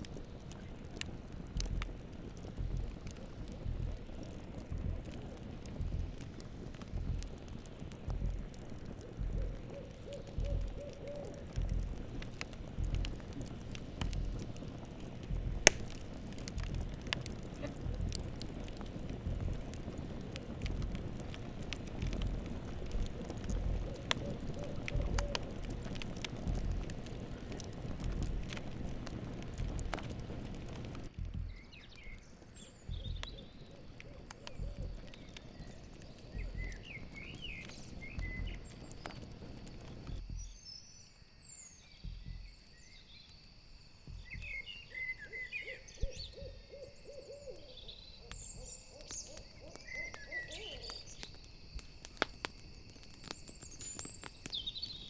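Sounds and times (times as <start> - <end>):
campfire crackling and popping: 0.0 - 55.0
cricket trill: 0.0 - 55.0.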